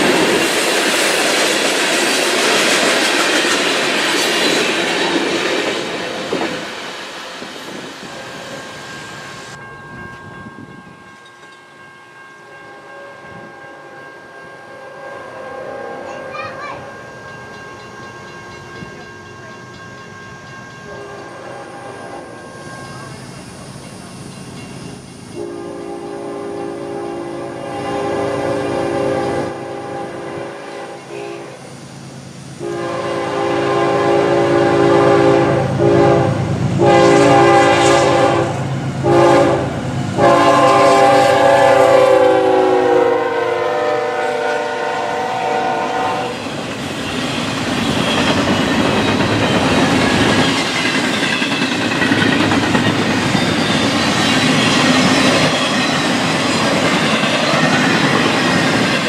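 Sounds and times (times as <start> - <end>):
locomotive horn blasts: 20.9 - 22.4, 25.4 - 31.6, 32.6 - 46.4.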